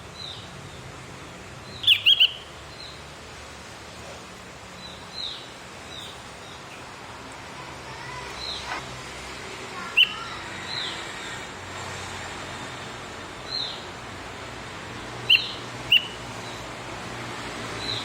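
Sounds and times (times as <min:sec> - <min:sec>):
steady background hiss: 0:00.0 - 0:18.0
bird short sharp chirps: 0:01.8 - 0:02.4, 0:15.3 - 0:16.2.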